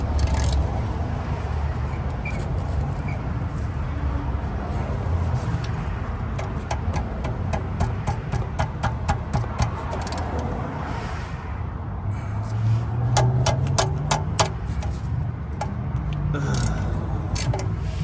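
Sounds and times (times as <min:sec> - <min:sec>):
ratchet wrench clicking: 0:00.0 - 0:00.9, 0:05.6 - 0:10.5, 0:13.1 - 0:18.0.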